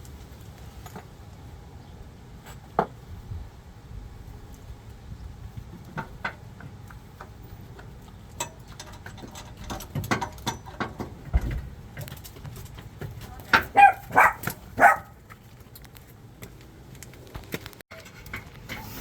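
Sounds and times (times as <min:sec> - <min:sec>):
clinks of hand tools and bolts: 0:08.3 - 0:12.8.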